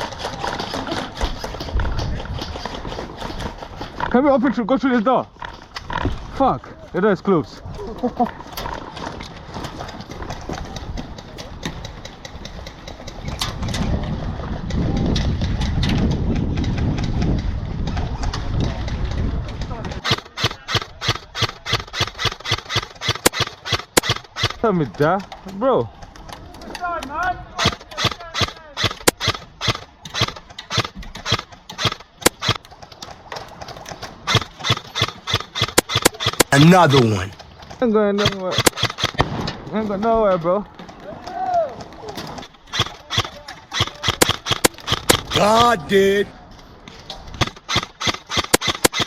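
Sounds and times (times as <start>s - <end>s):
wind rumble on microphone: 13.2s - 20.0s
airsoft rifle shots: 20.0s - 24.6s, 27.6s - 32.6s, 34.3s - 37.2s, 38.2s - 39.4s, 42.7s - 46.1s, 47.4s - 49.0s
sharp clicks and cracks: 20.0s - 24.6s, 27.6s - 36.6s, 38.2s - 39.3s, 42.4s - 45.4s, 47.4s - 49.0s.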